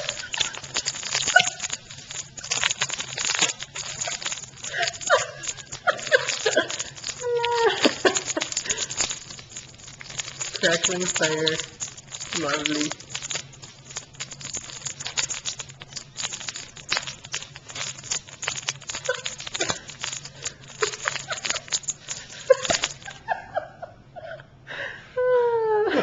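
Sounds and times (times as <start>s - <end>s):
cellophane crinkling: 0.0s - 23.5s
person laughing: 4.0s - 9.1s, 20.7s - 24.5s, 25.2s - 26.0s.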